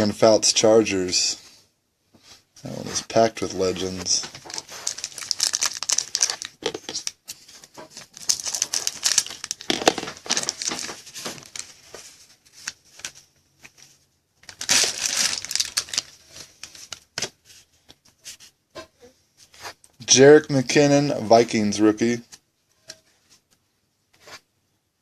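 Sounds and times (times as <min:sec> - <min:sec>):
plastic wrapper crinkling: 0:03.8 - 0:13.2, 0:14.4 - 0:17.3.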